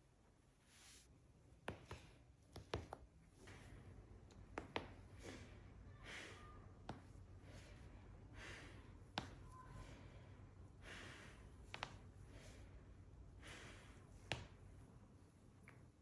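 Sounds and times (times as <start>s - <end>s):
person breathing: 5.0s - 14.6s.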